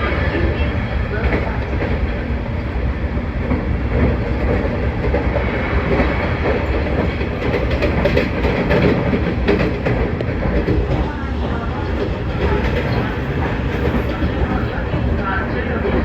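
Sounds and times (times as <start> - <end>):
train wheels rumbling on rails: 0.0 - 16.0
wheels clicking over rail joints: 5.9 - 16.0.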